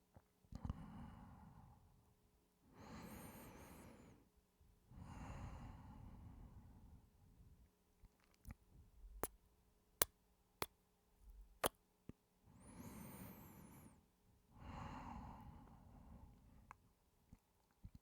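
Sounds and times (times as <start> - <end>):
long breaths: 2.7 - 4.2, 5.0 - 6.9, 12.5 - 16.6.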